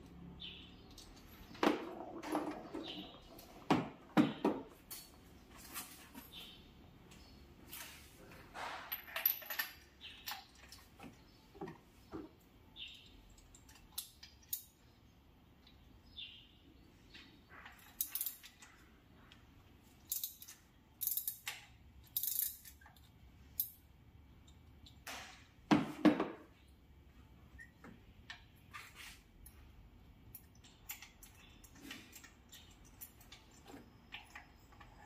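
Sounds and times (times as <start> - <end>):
metal tools clinking: 8.6 - 10.9, 17.6 - 18.8, 20.0 - 23.7, 30.3 - 35.0.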